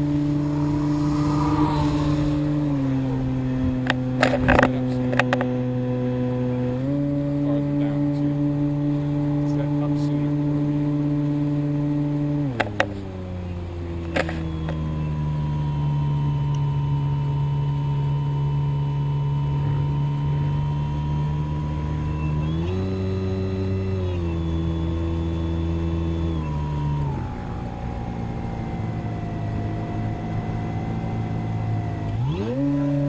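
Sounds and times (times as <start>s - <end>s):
electric model plane motor whine: 0.0s - 4.3s, 14.0s - 33.0s.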